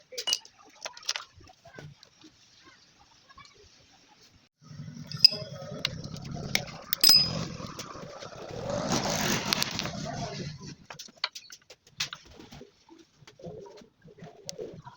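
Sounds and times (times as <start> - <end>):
sharp metallic clinks: 5.1 - 5.5, 7.0 - 7.5
small motorcycle engine starting and running: 6.2 - 10.7.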